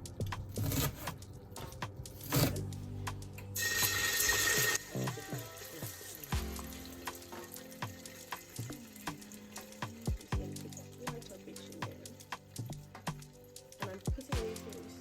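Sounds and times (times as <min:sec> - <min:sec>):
background music: 0:00.0 - 0:15.0
kitchen tap running: 0:03.6 - 0:12.6.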